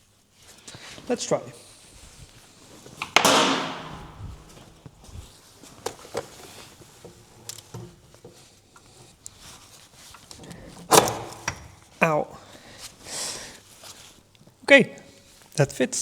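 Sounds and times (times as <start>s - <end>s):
loud metal clank ringing: 3.2s - 4.4s
metal knocks and scrapes: 3.2s - 4.8s.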